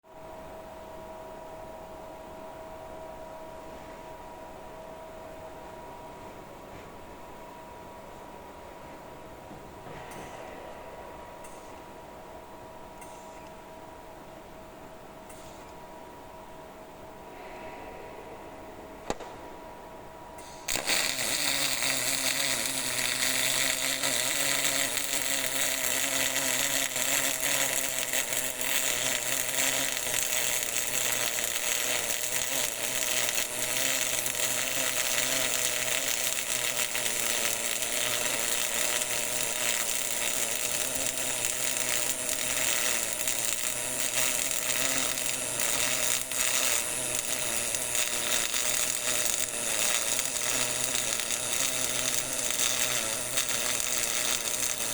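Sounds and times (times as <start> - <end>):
low hum: 15.8 - 20.7
welding arc sizzling crackle: 20.4 - 54.9.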